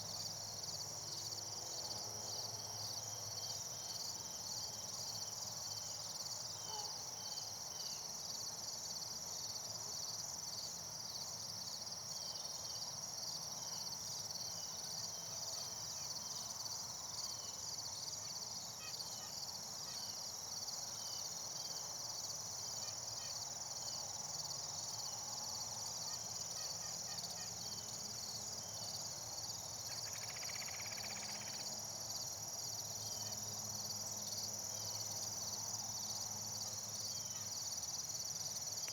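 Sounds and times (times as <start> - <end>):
crickets and insects trilling: 22.1 - 38.9.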